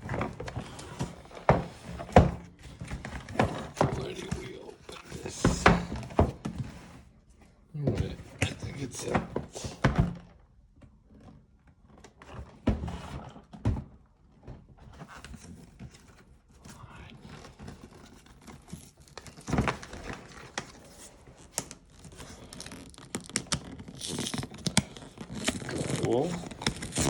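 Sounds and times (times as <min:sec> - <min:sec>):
packaging rustling and crinkling: 0:00.0 - 0:06.7, 0:15.0 - 0:27.0.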